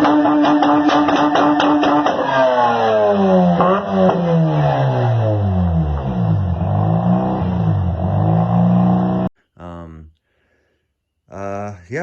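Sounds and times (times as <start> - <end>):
rotary engine revving: 0.0 - 9.3.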